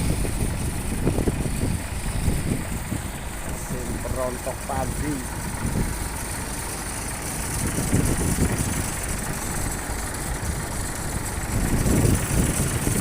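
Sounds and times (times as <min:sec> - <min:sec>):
dense rushing noise: 0:00.0 - 0:13.0
threshing machine engine drone: 0:00.0 - 0:13.0.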